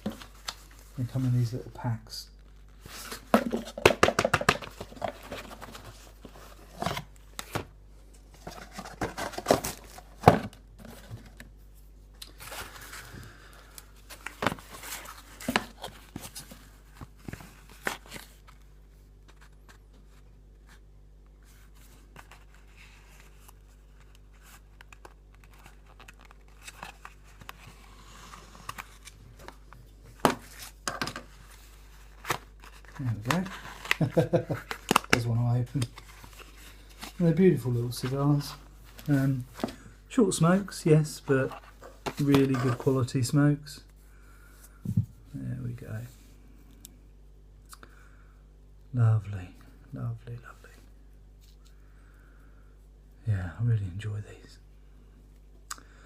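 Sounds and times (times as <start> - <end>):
packaging tearing and crinkling: 32.2 - 35.2.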